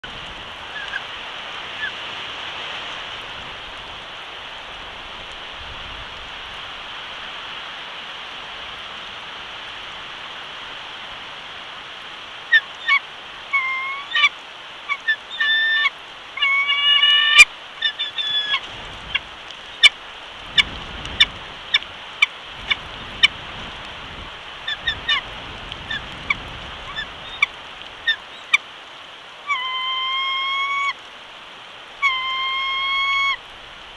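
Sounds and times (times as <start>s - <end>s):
rain: 0.0s - 33.9s
wind: 0.0s - 33.9s
eagle calling: 0.7s - 1.0s, 12.5s - 14.3s, 14.9s - 20.0s, 24.6s - 25.3s, 29.4s - 31.0s, 32.0s - 33.4s.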